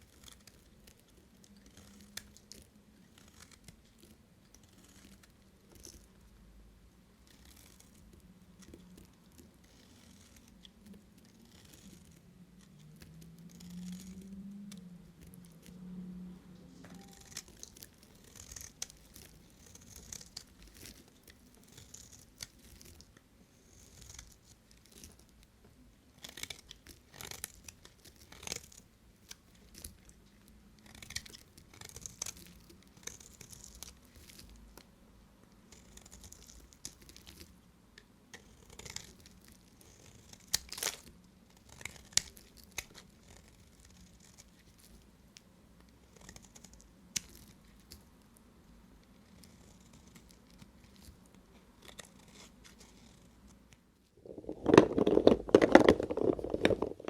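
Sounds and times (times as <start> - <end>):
blade scraping soap: 0.1 - 6.2, 7.2 - 14.4, 16.9 - 25.3, 26.1 - 30.2, 30.8 - 34.5, 38.3 - 45.0.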